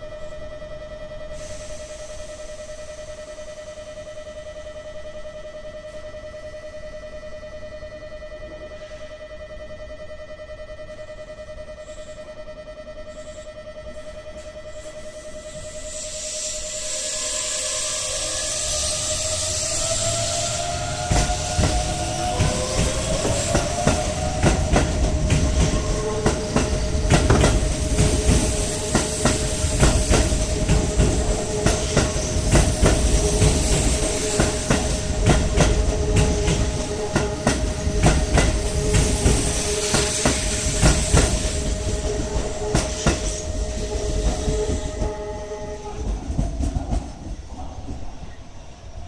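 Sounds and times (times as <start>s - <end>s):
train wheels clicking over rail joints: 15.5s - 48.3s.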